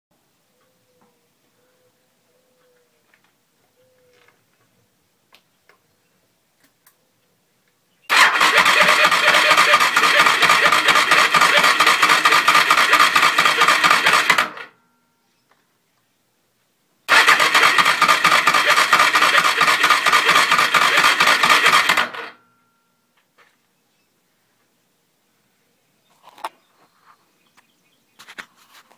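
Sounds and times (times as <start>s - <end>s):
motorcycle engine starter cranking: 8.1s - 14.7s, 17.1s - 22.5s.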